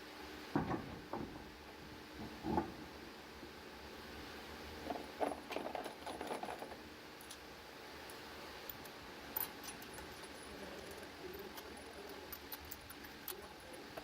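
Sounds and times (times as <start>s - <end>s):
hand tools clinking: 8.6s - 14.0s.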